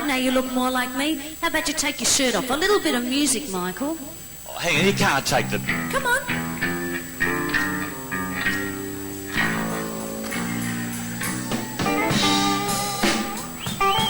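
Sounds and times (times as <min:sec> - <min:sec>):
guitar: 0:04.6 - 0:14.0
live band playing instrumental: 0:05.7 - 0:14.0.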